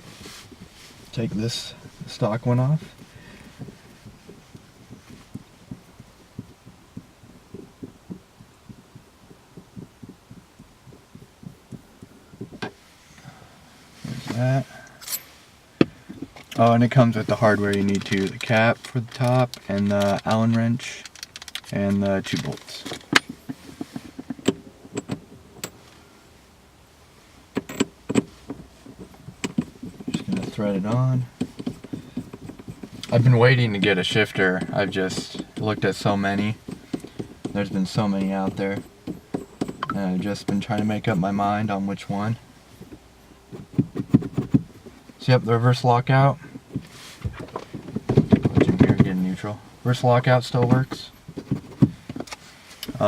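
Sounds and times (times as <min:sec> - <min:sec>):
low knocks and thuds: 0:00.0 - 0:12.8, 0:42.3 - 0:45.2, 0:46.3 - 0:49.4, 0:50.5 - 0:52.3
shift knob parts clicking: 0:15.8 - 0:25.8.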